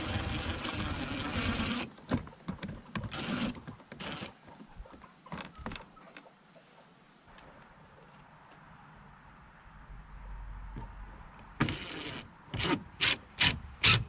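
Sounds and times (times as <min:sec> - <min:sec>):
power drill driving screws: 0:00.0 - 0:01.9, 0:03.0 - 0:04.3, 0:11.6 - 0:14.0.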